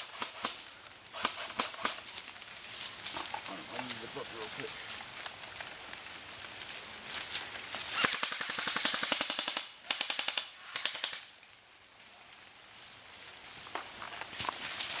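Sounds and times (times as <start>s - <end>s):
airsoft gun firing bursts: 0.0s - 0.6s, 1.2s - 2.0s, 8.0s - 11.3s.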